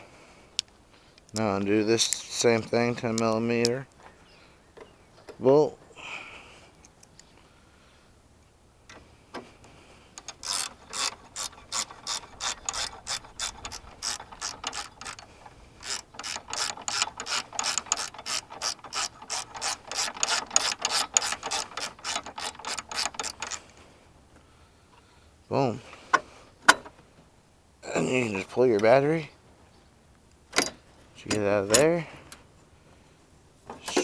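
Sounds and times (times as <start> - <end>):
ratchet wrench clicking: 10.2 - 23.6.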